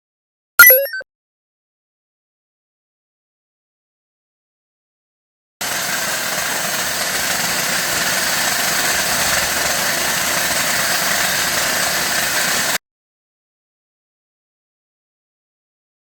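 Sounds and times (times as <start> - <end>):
hissing whirring machine: 5.6 - 12.8.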